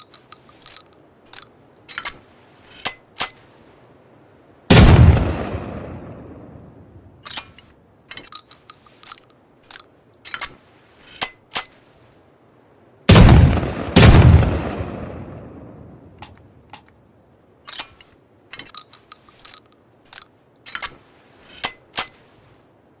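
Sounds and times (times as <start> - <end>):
metallic gun handling clicks: 0.0 - 3.5, 7.2 - 11.8, 17.6 - 22.3
shotgun shots: 4.7 - 6.1, 13.1 - 15.5.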